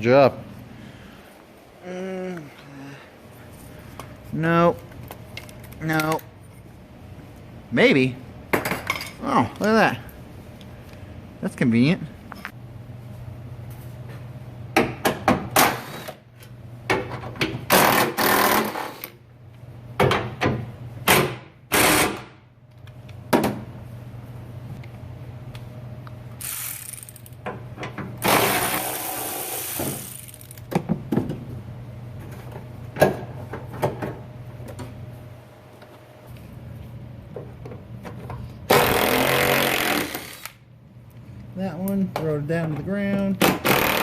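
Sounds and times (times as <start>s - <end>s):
power tool bursts: 17.7s - 19.1s, 28.2s - 30.5s, 38.7s - 40.6s, 43.5s - 44.0s.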